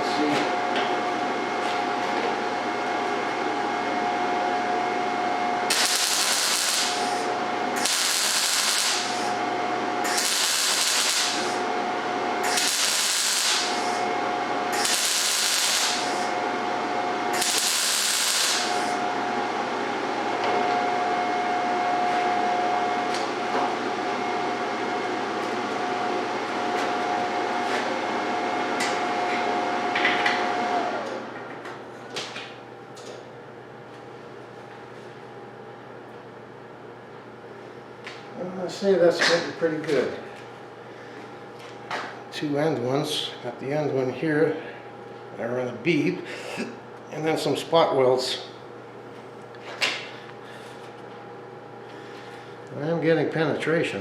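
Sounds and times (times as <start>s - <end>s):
steady hum with whine: 0.0s - 54.0s
welder arc sizzling: 5.6s - 16.6s, 17.2s - 19.2s.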